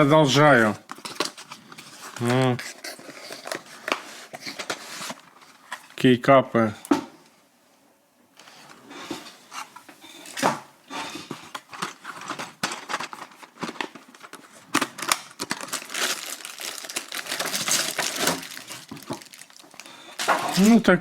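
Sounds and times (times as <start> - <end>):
plastic bag crinkling: 11.8 - 20.8.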